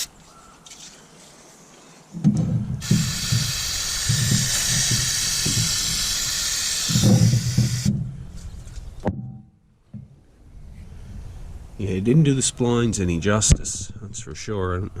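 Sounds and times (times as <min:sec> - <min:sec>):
low handling bumps: 0:02.2 - 0:06.0
aerosol spray hissing: 0:02.8 - 0:07.9.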